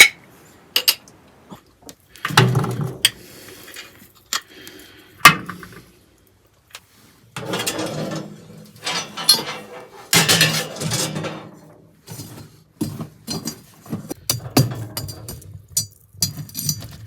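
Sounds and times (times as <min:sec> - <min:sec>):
hard objects scraping and rustling: 0:06.8 - 0:17.0.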